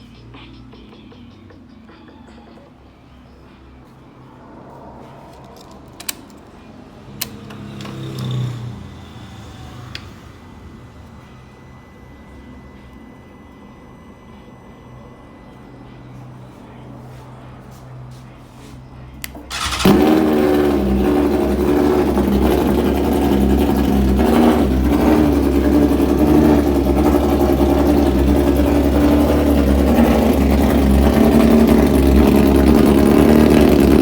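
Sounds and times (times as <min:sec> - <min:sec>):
motorcycle engine starting and idling: 0:04.7 - 0:12.0, 0:19.2 - 0:34.0.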